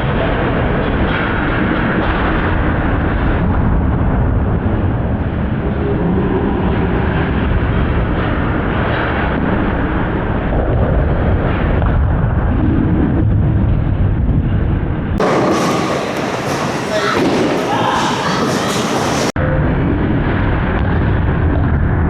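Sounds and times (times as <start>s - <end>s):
bowling pins crashing: 15.2s - 19.3s
bowling balls rolling: 15.2s - 19.4s.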